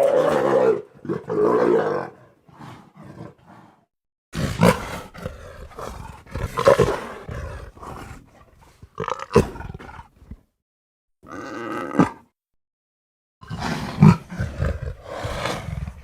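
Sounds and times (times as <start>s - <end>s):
leopard roaring: 0.0s - 3.8s, 4.4s - 10.2s, 13.4s - 16.0s.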